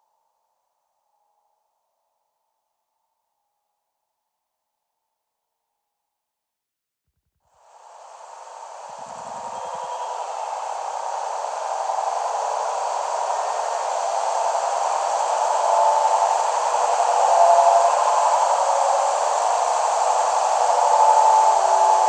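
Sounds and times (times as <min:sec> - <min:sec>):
steady rushing noise: 0:07.8 - 0:22.0.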